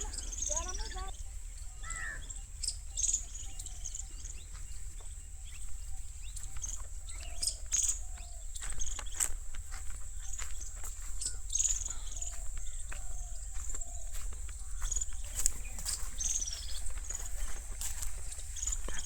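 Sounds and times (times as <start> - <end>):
bird chirps: 0.0 - 19.0
insects chirring: 0.0 - 19.0.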